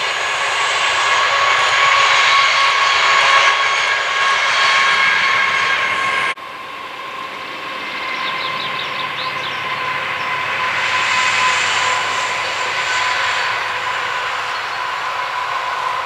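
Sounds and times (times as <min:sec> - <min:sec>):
train running with whine: 0:00.0 - 0:16.0
bird chirping: 0:08.0 - 0:10.5, 0:14.4 - 0:15.0.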